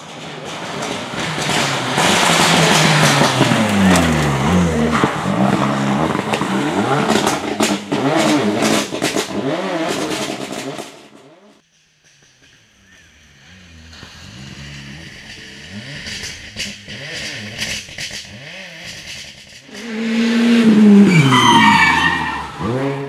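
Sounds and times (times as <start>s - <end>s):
rally car engine revving: 0.0s - 11.6s, 13.0s - 23.0s
tyres squealing: 19.8s - 23.0s.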